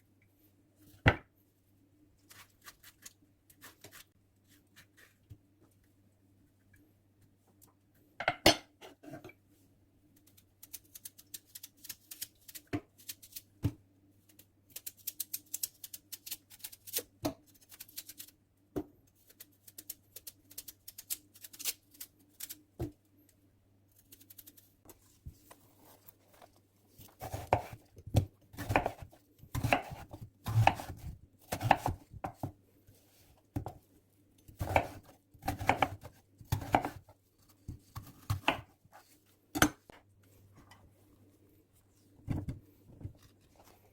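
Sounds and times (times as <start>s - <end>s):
knife chopping on cutting board: 27.2s - 27.8s, 28.6s - 32.5s, 34.6s - 37.0s.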